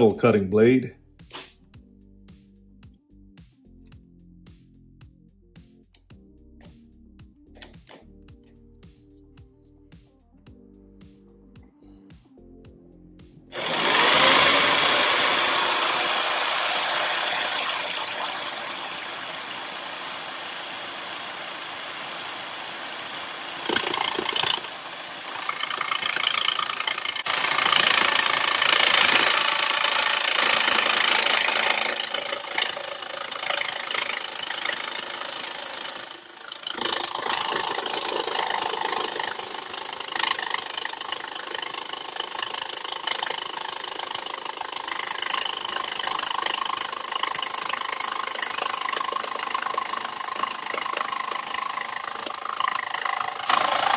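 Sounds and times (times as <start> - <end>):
jigsaw cutting sheet metal: 1.3 - 1.5, 13.5 - 53.9.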